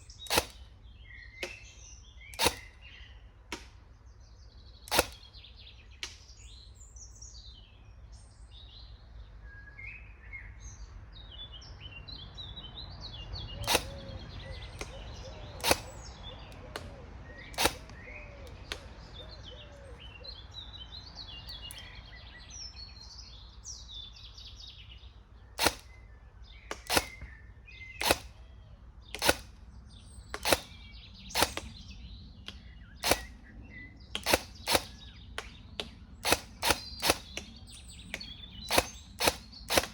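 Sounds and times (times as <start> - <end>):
birds chirping: 0.0 - 39.9
airsoft gun shots: 0.1 - 0.6, 1.4 - 1.7, 2.3 - 2.8, 4.9 - 5.3, 13.6 - 19.1, 25.6 - 26.0, 26.7 - 28.4, 29.1 - 29.6, 30.3 - 31.9, 32.5 - 33.4, 34.1 - 39.9.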